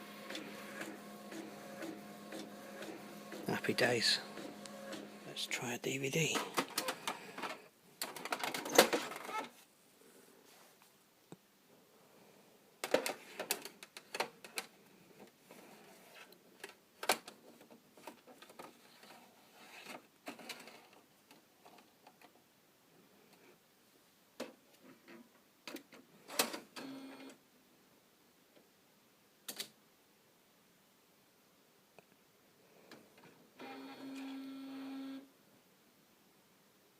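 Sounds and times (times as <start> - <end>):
printer motor whirring: 0.0 - 5.3.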